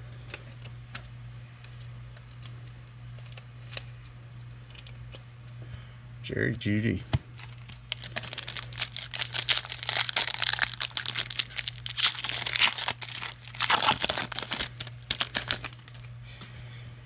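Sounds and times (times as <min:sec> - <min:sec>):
foil wrapper tearing and crinkling: 0:07.3 - 0:16.1.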